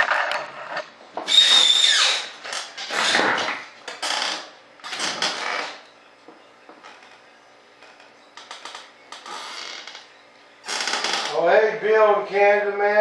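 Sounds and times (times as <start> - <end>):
high squeal: 1.3 - 2.3.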